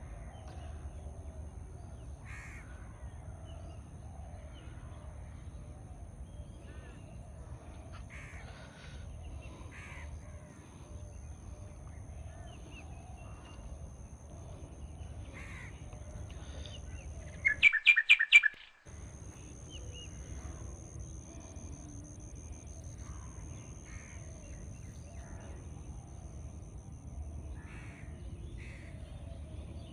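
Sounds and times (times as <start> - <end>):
birds calling: 6.6 - 21.3.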